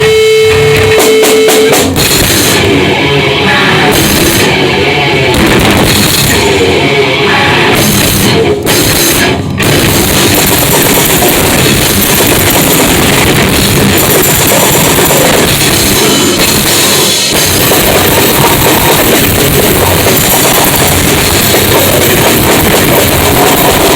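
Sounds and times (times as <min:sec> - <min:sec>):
distorted guitar: 0:00.0 - 0:23.9
heavy rock band playing: 0:00.0 - 0:23.9
pounding drum kit: 0:00.0 - 0:23.9.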